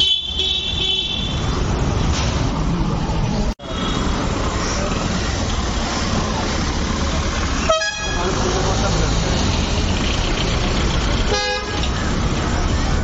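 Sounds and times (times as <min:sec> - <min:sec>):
car horn honking: 0:00.0 - 0:01.4, 0:07.6 - 0:08.4, 0:11.3 - 0:11.9
road traffic rumble: 0:00.0 - 0:13.0.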